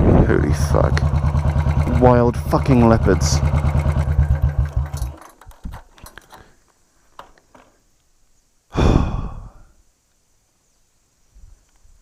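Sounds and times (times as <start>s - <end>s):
faint clicks and knocks: 4.6s - 8.1s
man sighing heavily: 8.7s - 9.8s.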